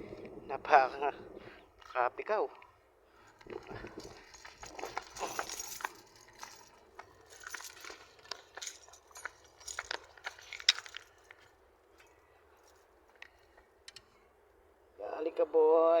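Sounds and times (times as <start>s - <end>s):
clicking and rattling from handling: 3.3s - 14.1s.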